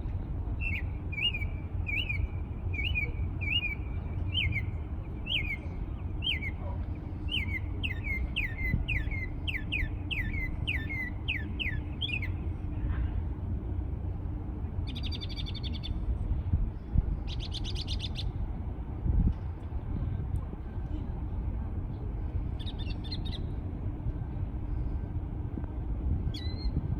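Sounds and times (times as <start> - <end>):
songbird whistling: 0.6 - 6.6, 7.3 - 12.4, 26.3 - 26.8.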